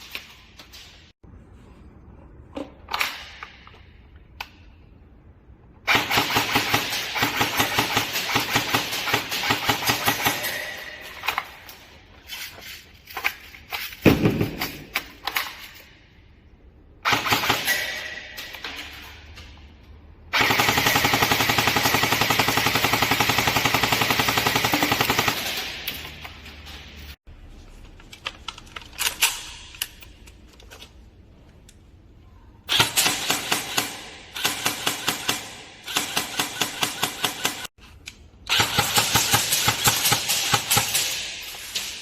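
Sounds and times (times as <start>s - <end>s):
airsoft guns firing bursts: 20.3s - 25.8s.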